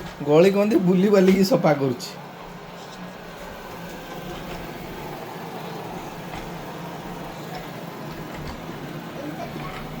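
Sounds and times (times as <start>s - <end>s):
robot vacuum motor hum: 3.1s - 10.0s.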